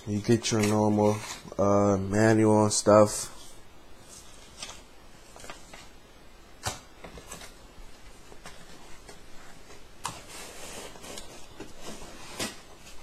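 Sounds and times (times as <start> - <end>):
cardboard and plastic rustling: 0.1 - 1.6, 6.6 - 13.0.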